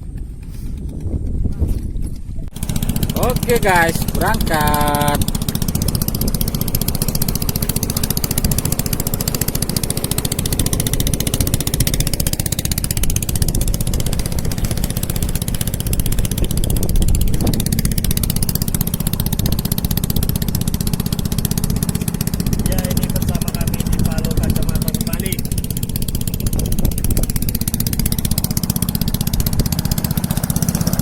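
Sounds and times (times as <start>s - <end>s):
small engine running: 0.0s - 31.0s.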